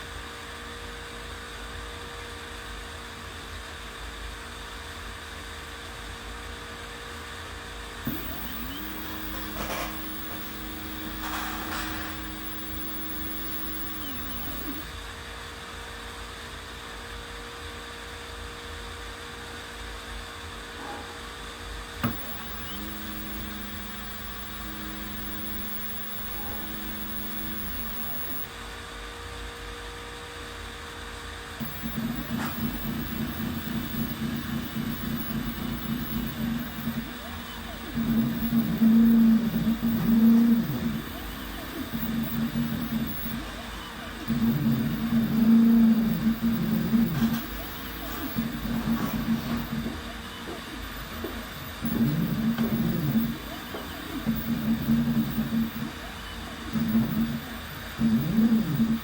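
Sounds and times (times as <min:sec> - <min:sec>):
rhythmically pulsing machine: 0:08.1 - 0:14.9, 0:22.0 - 0:28.5, 0:31.6 - 0:59.0
steady hum: 0:08.1 - 0:15.0, 0:22.0 - 0:28.5, 0:31.6 - 0:59.0
stepper motors whining: 0:08.1 - 0:15.0, 0:22.0 - 0:28.5, 0:31.6 - 0:59.0
sharp click: 0:22.0 - 0:28.5.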